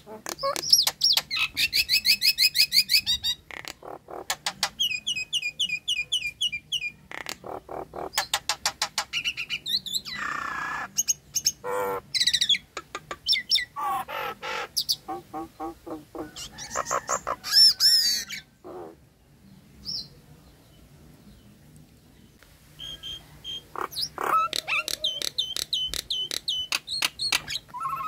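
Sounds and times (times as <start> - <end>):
myna calling: 0.0 - 19.1, 22.8 - 28.0
whistles and squawks: 27.7 - 28.0.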